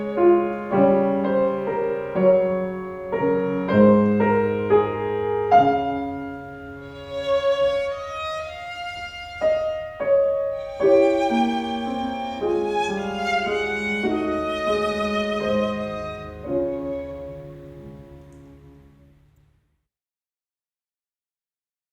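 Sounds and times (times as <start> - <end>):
violin melody: 0.0 - 19.2
piano chords: 0.0 - 19.6.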